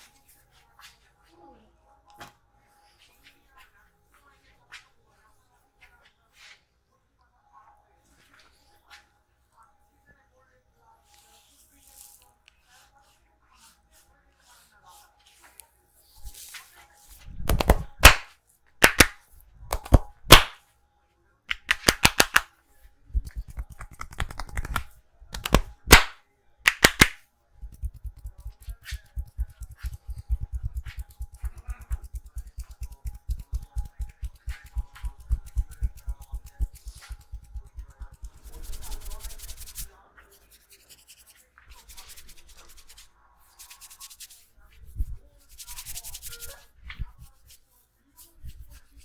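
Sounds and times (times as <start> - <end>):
hands rubbing: 17.5 - 20.6, 21.5 - 22.5, 23.2 - 39.9
hands smacking body: 17.5 - 20.6, 21.5 - 22.5, 23.2 - 38.5
soft rapid thumps: 23.2 - 26.1, 26.7 - 38.6.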